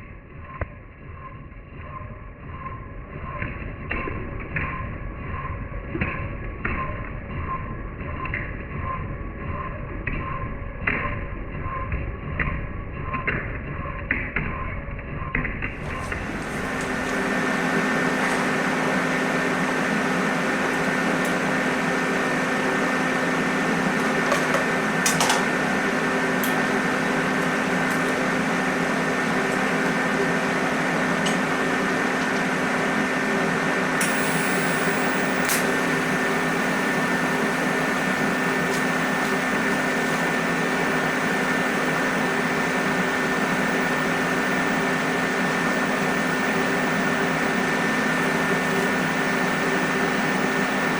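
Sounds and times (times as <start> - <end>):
steady machine hum: 15.6 - 50.9.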